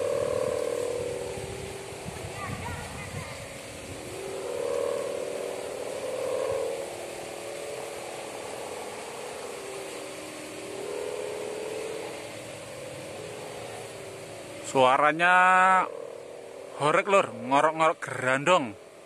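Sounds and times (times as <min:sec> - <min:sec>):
wind noise: 0:00.0 - 0:15.1
kite hummer buzzing: 0:00.0 - 0:19.0.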